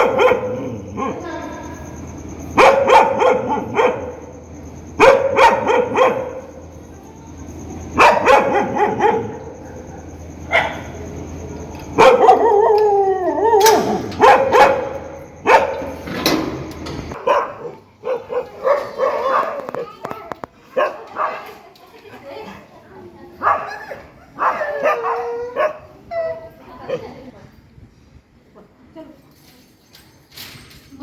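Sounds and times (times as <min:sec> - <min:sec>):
dog barking angrily: 0:00.0 - 0:01.2, 0:02.6 - 0:04.3, 0:05.0 - 0:06.5, 0:07.9 - 0:11.0, 0:12.0 - 0:12.8, 0:13.4 - 0:16.0, 0:17.1 - 0:19.9, 0:20.7 - 0:21.4, 0:23.4 - 0:25.9
dog whining: 0:12.0 - 0:15.0.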